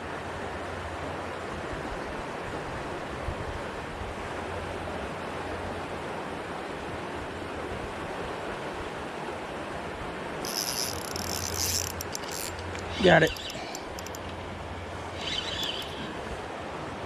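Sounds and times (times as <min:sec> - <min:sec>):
floodwater rushing in creek: 0:00.2 - 0:17.0.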